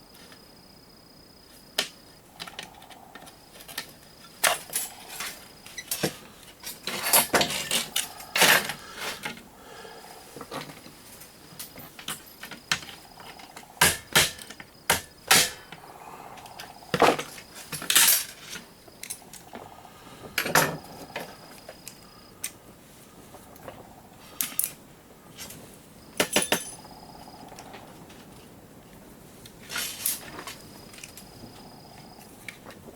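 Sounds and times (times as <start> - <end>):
small parts clicking and clattering: 17.0 - 19.6, 26.2 - 26.8.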